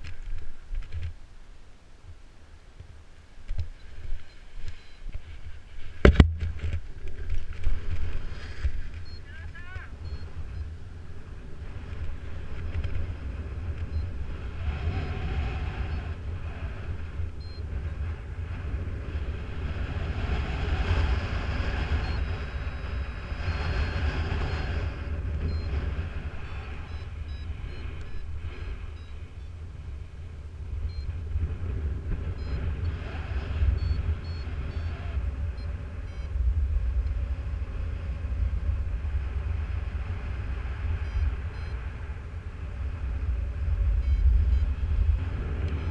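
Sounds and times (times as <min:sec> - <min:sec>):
wind buffeting microphone: 0:03.4 - 0:45.9
faint short high beeps: 0:03.8 - 0:05.1, 0:09.0 - 0:10.7, 0:26.4 - 0:28.3, 0:41.1 - 0:41.8, 0:44.0 - 0:44.8.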